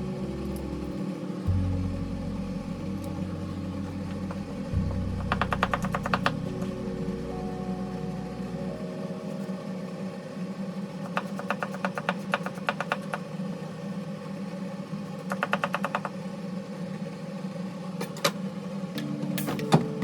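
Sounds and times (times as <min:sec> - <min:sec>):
steady hum: 0:00.0 - 0:15.3.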